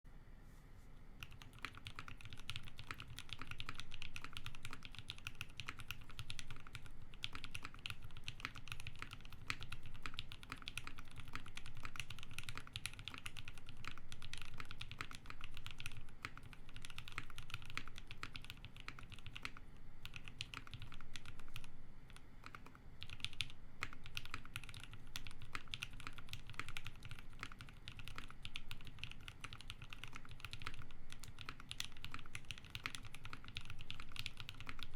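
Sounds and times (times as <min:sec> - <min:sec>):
mechanical keyboard typing: 0:01.2 - 0:34.9.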